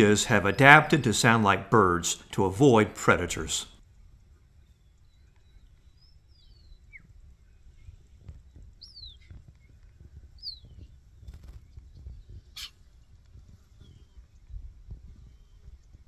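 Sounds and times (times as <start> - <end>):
cheetah cubs chirping: 0.0 - 3.0, 8.8 - 9.7, 10.4 - 10.8, 12.5 - 12.8.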